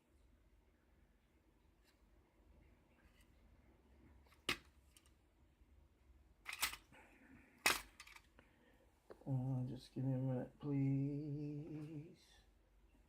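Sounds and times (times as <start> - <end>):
small tools clacking: 6.5 - 6.9, 7.6 - 8.3.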